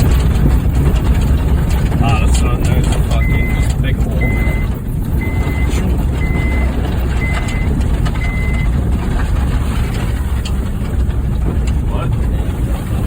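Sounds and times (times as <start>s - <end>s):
car engine rumble: 0.0s - 13.0s
electronic beep: 3.2s - 8.7s.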